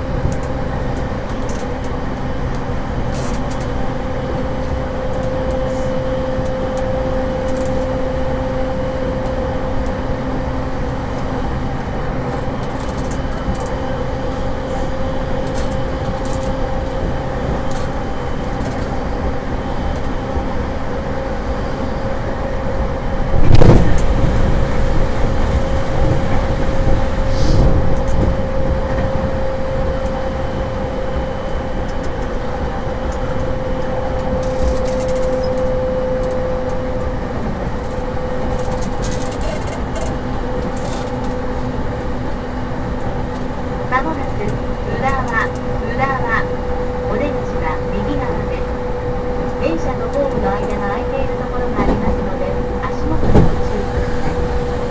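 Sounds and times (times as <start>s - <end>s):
train motor whine: 0.0s - 54.9s
train wheels rumbling on rail: 0.0s - 54.9s
loud air rush: 23.4s - 28.0s.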